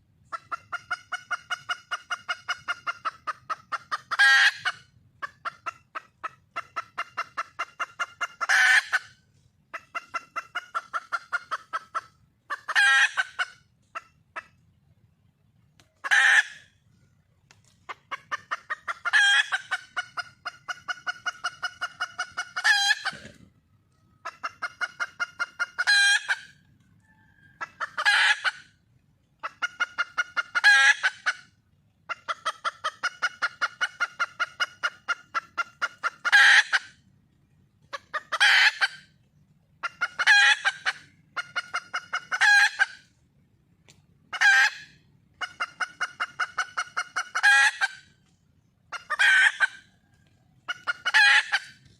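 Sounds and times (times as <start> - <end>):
hen clucking rapidly: 0.1 - 51.9
hen squawking: 17.9 - 23.5, 48.9 - 49.8, 50.7 - 51.8.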